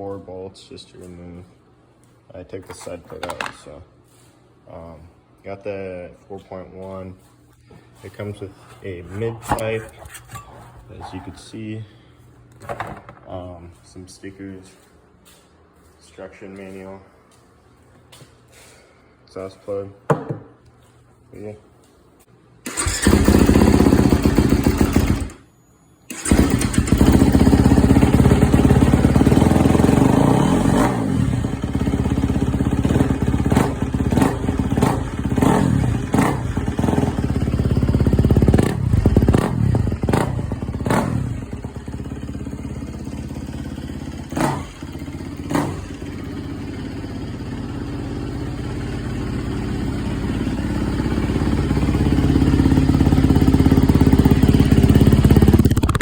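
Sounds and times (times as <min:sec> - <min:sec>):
dirt bike engine revving: 0:22.7 - 0:25.3, 0:26.1 - 0:56.0.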